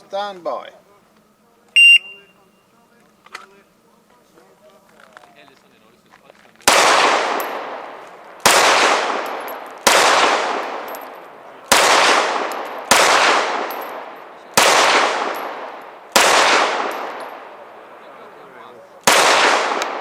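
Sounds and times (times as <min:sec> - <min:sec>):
pistol shots echoing: 0:06.6 - 0:17.8, 0:19.0 - 0:20.0.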